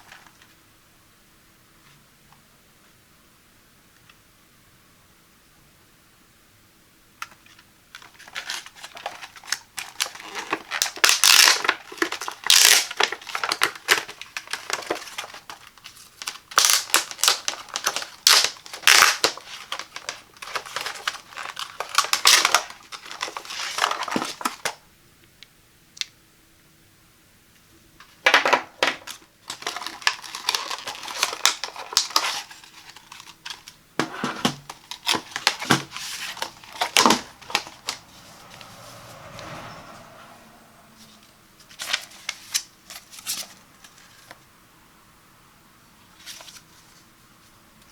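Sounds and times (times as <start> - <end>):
packaging crinkling and rustling: 7.2 - 24.8, 28.0 - 39.1, 41.6 - 44.5, 46.1 - 47.9.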